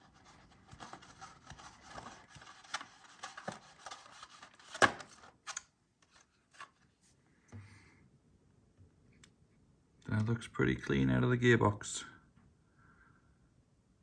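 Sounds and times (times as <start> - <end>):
rubbing and scraping: 0.0 - 5.4.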